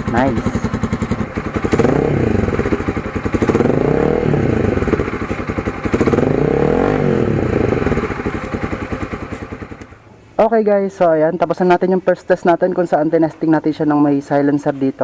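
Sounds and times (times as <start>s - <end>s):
motorcycle engine revving: 0.0s - 10.0s.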